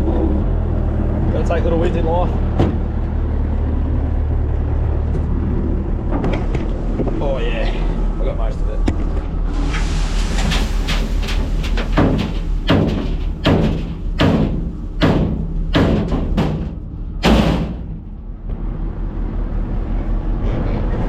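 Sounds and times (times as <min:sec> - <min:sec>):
heavy knocking and rattling: 0:09.8 - 0:18.5.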